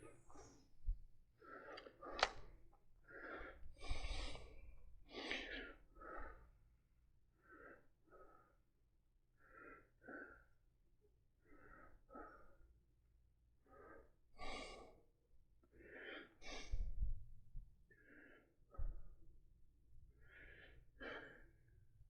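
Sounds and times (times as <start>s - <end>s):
person breathing heavily: 1.4s - 6.6s, 11.4s - 12.6s, 13.6s - 15.1s, 17.9s - 19.2s, 20.2s - 21.7s.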